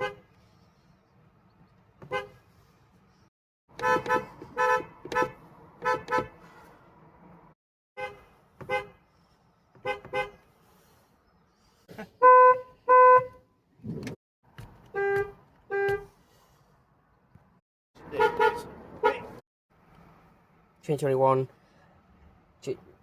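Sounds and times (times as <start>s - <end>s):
car horn short toots: 3.7s - 6.4s, 12.2s - 13.4s, 14.9s - 16.1s, 18.0s - 19.4s.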